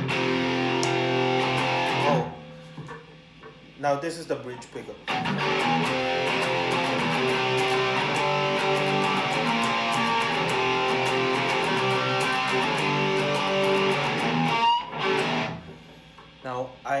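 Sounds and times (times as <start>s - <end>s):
distorted electric guitar: 0.0s - 3.0s, 5.0s - 15.9s.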